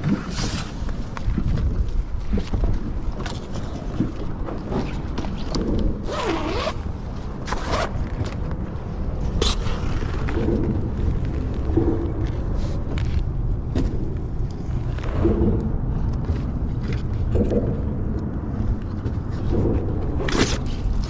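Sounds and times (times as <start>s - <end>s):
wind rumble on microphone: 0.0s - 21.0s
zipper rasping: 6.0s - 8.1s.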